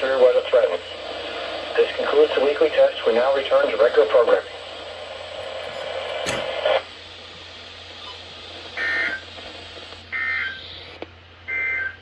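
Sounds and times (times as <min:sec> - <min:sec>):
sharp click: 0:05.4 - 0:06.7.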